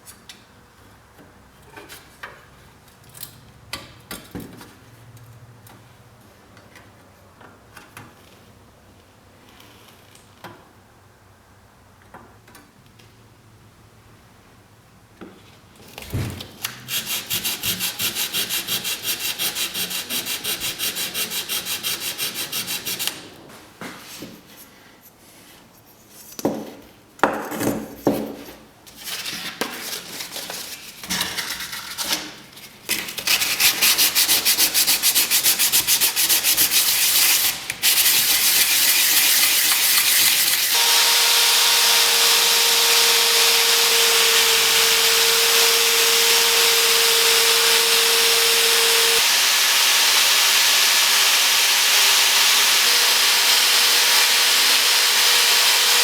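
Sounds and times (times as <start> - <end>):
sanding strokes: 16.9 - 23.1, 33.3 - 56.0
power tool whirring: 36.3 - 56.0.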